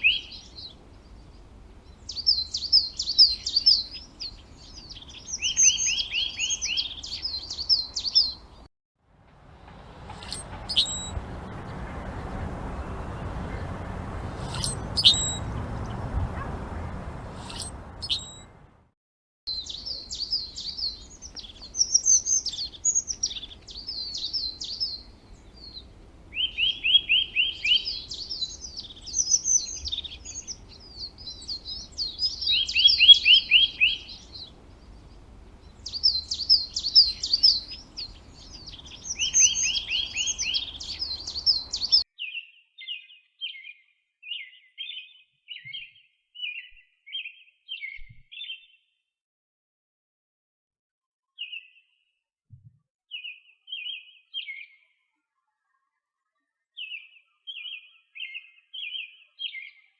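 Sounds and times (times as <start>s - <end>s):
lower rapid bird trill: 0.0s - 8.7s, 10.1s - 18.5s, 19.5s - 42.0s
songbirds trilling: 0.0s - 8.7s, 10.2s - 18.4s, 19.5s - 42.0s
short bird chirps: 10.2s - 11.2s, 14.4s - 15.5s, 17.4s - 18.5s, 19.5s - 48.8s.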